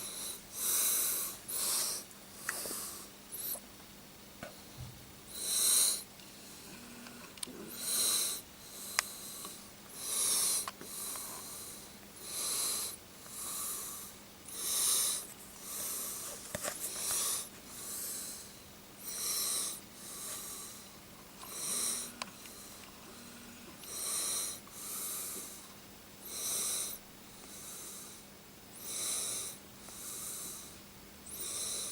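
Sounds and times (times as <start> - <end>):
heavy breathing close to microphone: 0.0 - 3.6, 5.3 - 6.9, 7.5 - 31.9.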